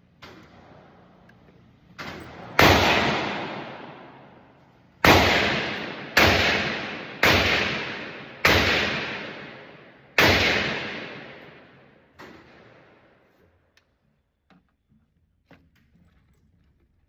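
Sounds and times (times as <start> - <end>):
gunshots with echo: 2.3 - 4.4, 5.0 - 13.0.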